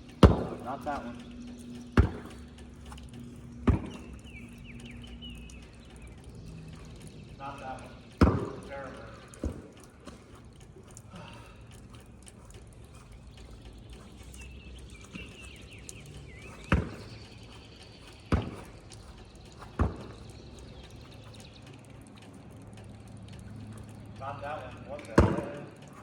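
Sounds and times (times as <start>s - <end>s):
basketball bouncing on hard ground: 0.1s - 5.0s, 7.6s - 10.4s, 14.0s - 21.4s, 25.1s - 26.0s.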